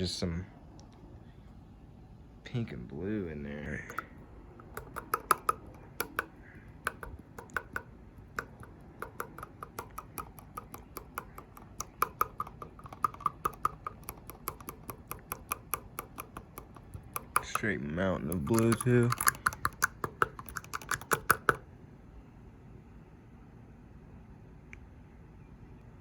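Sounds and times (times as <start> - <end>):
glitter container clicking: 3.9 - 21.6.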